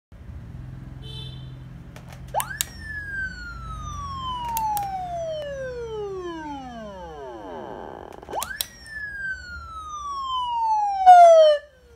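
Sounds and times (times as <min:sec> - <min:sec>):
sharp clicks: 0:01.9 - 0:03.0, 0:04.3 - 0:05.5, 0:07.0 - 0:09.1
low steady hum: 0:02.0 - 0:11.9
police siren wailing: 0:02.3 - 0:11.9.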